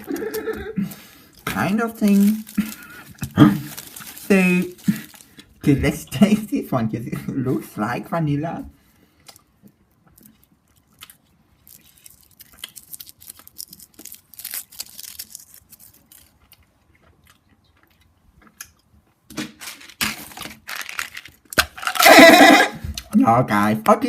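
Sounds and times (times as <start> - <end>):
person chewing chocolate: 0.0 - 5.6, 8.9 - 19.3, 20.2 - 23.1.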